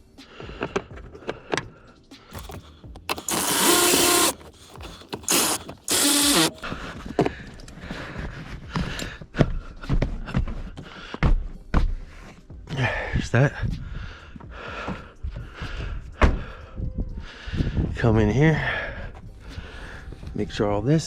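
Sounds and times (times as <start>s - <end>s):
rasping scraping of trim: 2.3s - 6.6s.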